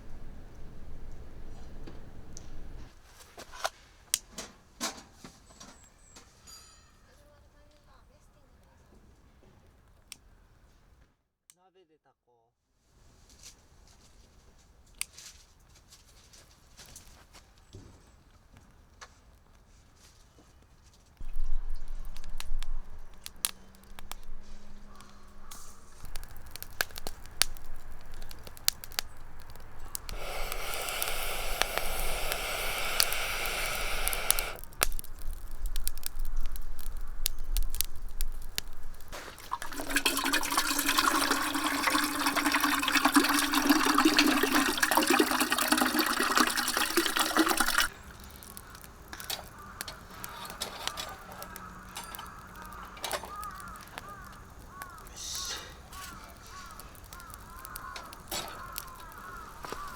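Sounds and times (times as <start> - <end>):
water running: 25.9 - 34.6, 38.9 - 47.9
small clicks and knocks: 48.1 - 55.1.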